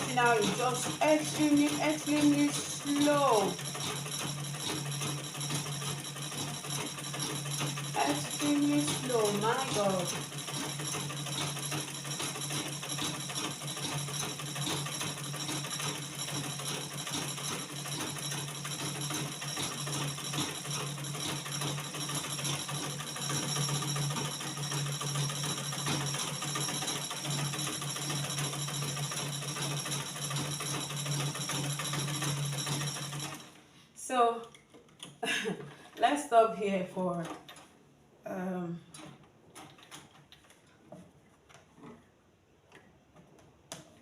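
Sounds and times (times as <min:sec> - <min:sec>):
sewing machine needle ticking: 0:00.0 - 0:33.5.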